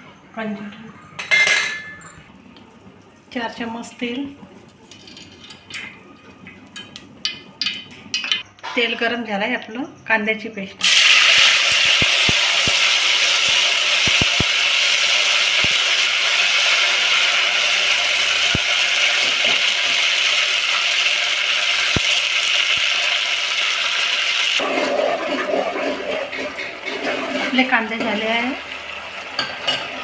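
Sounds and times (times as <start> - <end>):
onion paste sizzling in oil: 10.8 - 30.0.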